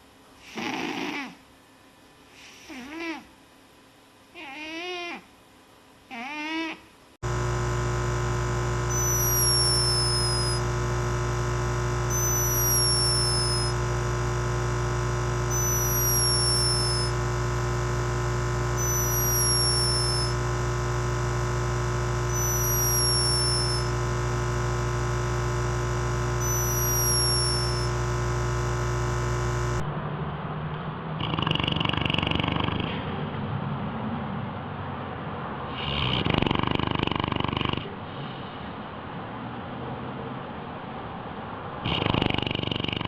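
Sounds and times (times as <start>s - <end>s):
electronic drone: 7.2s - 29.9s
falling high chirp: 8.9s - 10.6s, 12.1s - 13.8s, 15.5s - 17.1s, 18.8s - 20.4s, 22.3s - 23.9s, 26.4s - 27.9s.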